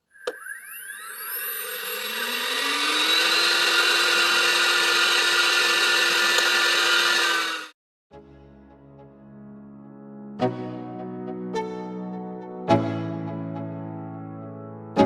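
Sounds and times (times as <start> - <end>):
suction fan whine: 0.0 - 7.7.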